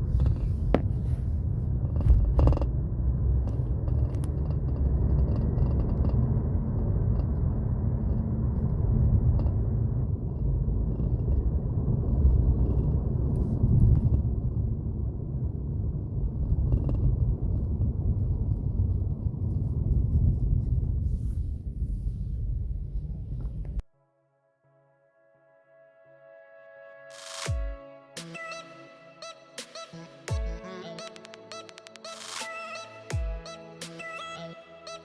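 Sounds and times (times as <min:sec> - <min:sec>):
car interior road rumble: 0:00.0 - 0:23.8.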